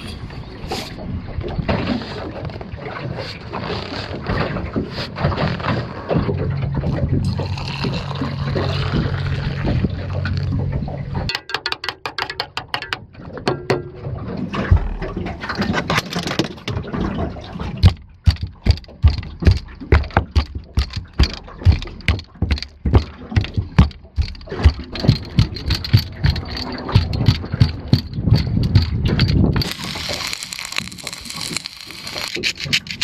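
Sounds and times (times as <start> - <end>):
mechanical clicking and knocking: 11.3 - 33.0.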